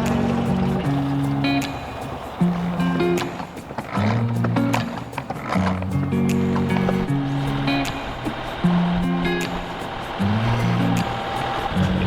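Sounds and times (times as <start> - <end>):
plucked guitar chords: 5.8 - 11.0.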